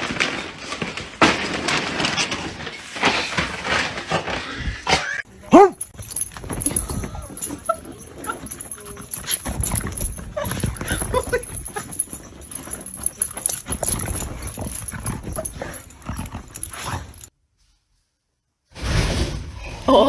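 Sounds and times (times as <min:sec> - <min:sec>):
clattering and scuffling: 0:00.0 - 0:17.8
dog noises: 0:04.9 - 0:17.3.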